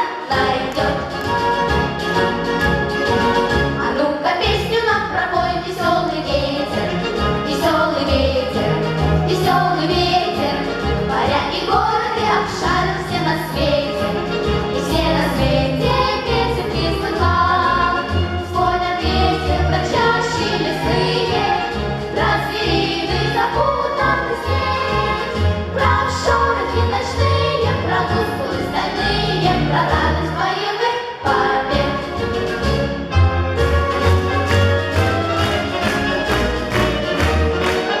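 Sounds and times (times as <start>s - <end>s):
choir singing in unison: 0.0s - 1.6s, 14.8s - 32.2s
instrumental accompaniment: 0.0s - 4.1s, 31.3s - 38.0s
pulsing bass: 31.3s - 38.0s.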